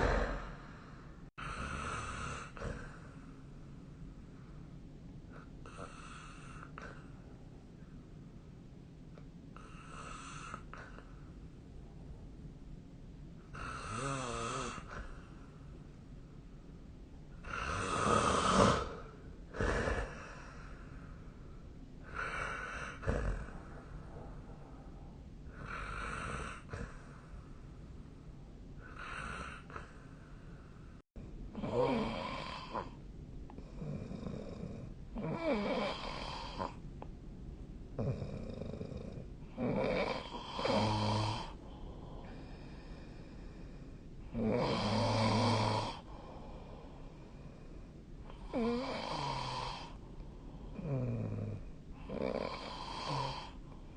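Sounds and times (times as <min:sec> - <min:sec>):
breath sound: 0:00.0 - 0:01.6
person snoring: 0:00.0 - 0:03.2, 0:13.5 - 0:15.2, 0:17.4 - 0:20.9, 0:22.0 - 0:23.9, 0:25.5 - 0:27.2, 0:28.8 - 0:30.0, 0:31.5 - 0:33.0, 0:33.6 - 0:36.8, 0:38.0 - 0:43.4, 0:44.3 - 0:47.6, 0:48.3 - 0:50.0, 0:50.7 - 0:53.6.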